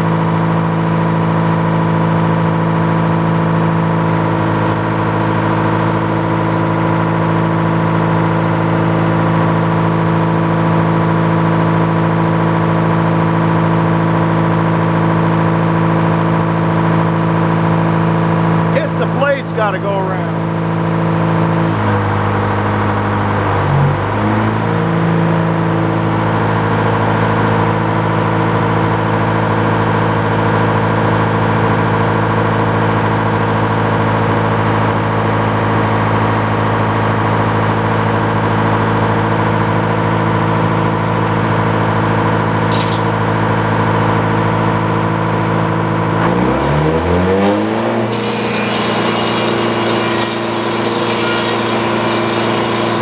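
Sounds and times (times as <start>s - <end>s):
power saw motor humming: 42.6s - 43.4s, 47.0s - 53.0s.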